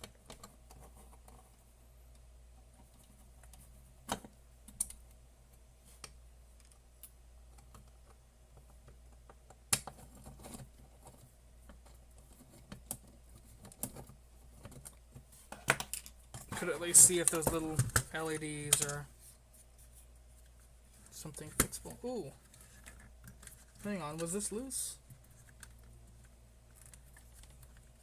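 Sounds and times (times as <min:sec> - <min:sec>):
low steady hum: 0:00.0 - 0:28.0
small hard parts clicking: 0:06.6 - 0:19.1.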